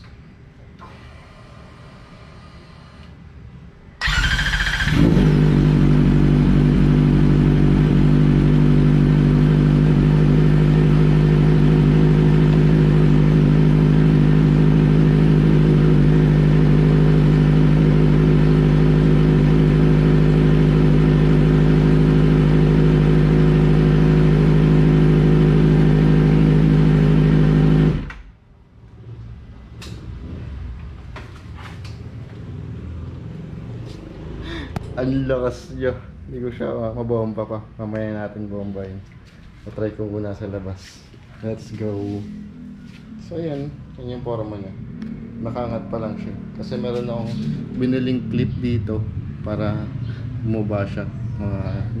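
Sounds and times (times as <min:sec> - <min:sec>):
motorcycle engine starter cranking: 0:04.0 - 0:05.2.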